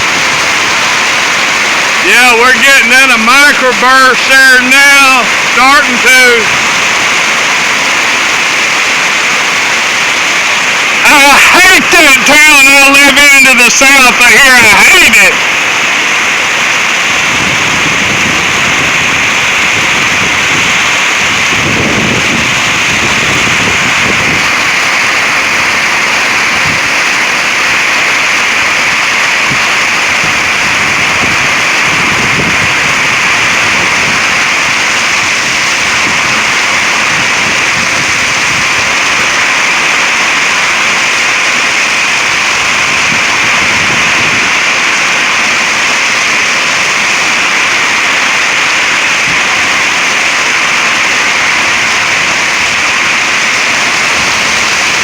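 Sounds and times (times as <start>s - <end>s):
heavy rain pouring: 0.0s - 55.0s
low thunder rumbles: 17.1s - 27.1s.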